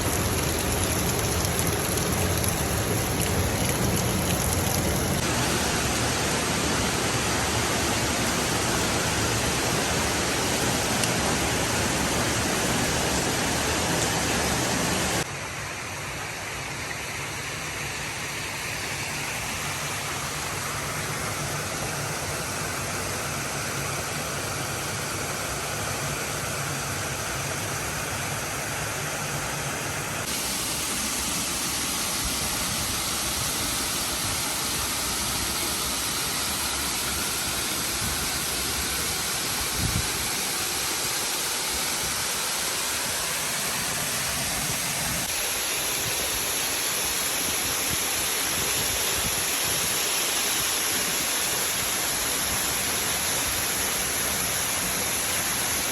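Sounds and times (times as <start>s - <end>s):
waterfall rushing: 0.0s - 15.3s, 30.2s - 55.9s.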